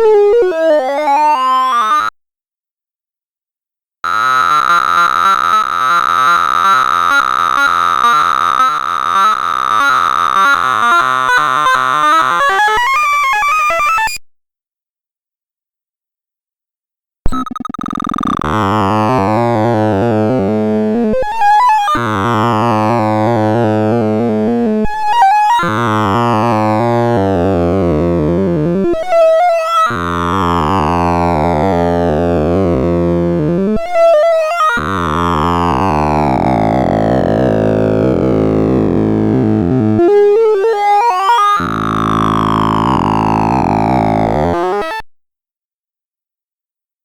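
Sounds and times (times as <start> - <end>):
dense buzzing computer tones: 17.3 - 20.8, 41.6 - 44.6.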